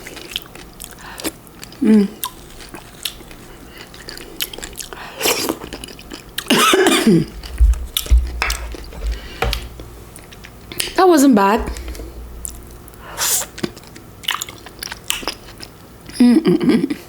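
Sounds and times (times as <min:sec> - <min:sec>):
dull low bumps: 0:07.2 - 0:10.2, 0:11.4 - 0:13.4.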